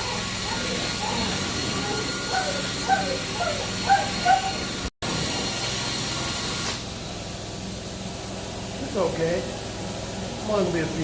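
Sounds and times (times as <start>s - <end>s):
dog whimpering: 0.0s - 4.9s.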